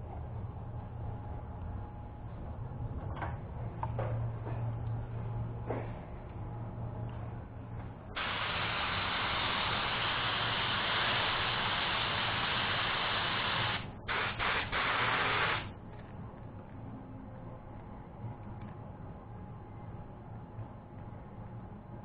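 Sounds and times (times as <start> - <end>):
paint spray gun hissing: 8.2 - 15.7.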